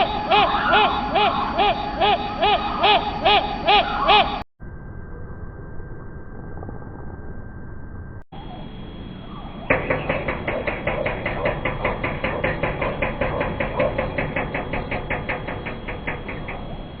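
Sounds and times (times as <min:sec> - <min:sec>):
woodpecker hammering on metal: 0:00.0 - 0:04.0, 0:09.6 - 0:17.0.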